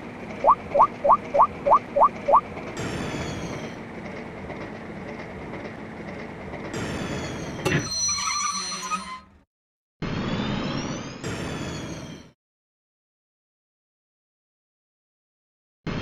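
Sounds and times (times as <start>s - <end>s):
train wheels rumbling on rails: 0.0s - 7.7s.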